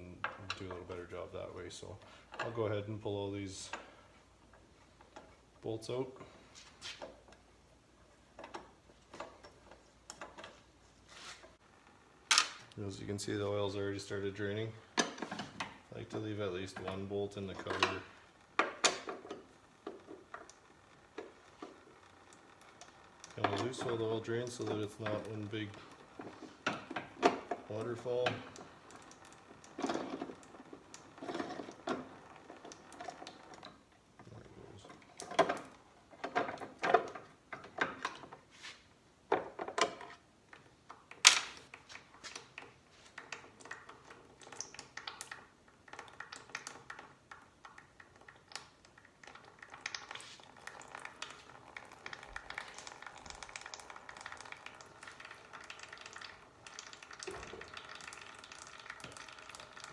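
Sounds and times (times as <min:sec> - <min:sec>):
oil trickling: 0:15.8 - 0:37.5, 0:41.7 - 0:59.9.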